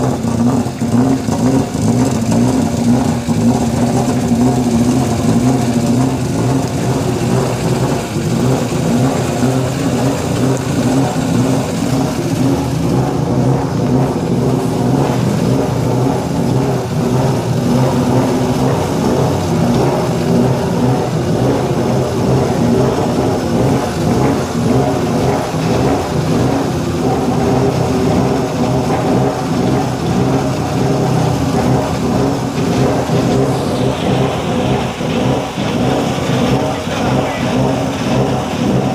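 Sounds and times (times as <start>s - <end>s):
car engine running at low revs: 0.0s - 38.9s.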